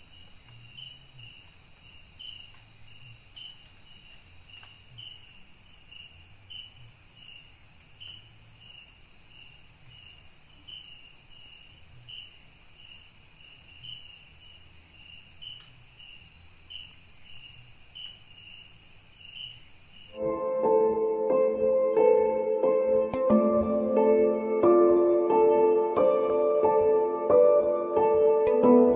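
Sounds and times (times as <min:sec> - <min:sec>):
crickets chirping: 0:00.0 - 0:20.2
music: 0:20.2 - 0:28.9.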